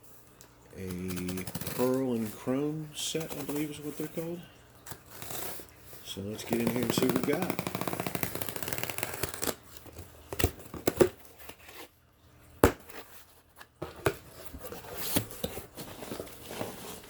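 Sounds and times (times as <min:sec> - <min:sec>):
cardboard crinkling: 0:00.8 - 0:12.0, 0:12.9 - 0:17.0
packing tape tearing: 0:00.9 - 0:02.0, 0:06.4 - 0:11.8.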